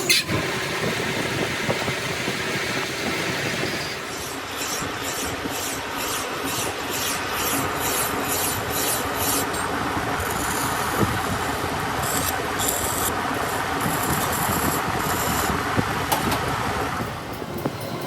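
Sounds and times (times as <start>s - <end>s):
metal lathe running: 0.0s - 18.0s
rasping against turning steel: 4.6s - 15.6s.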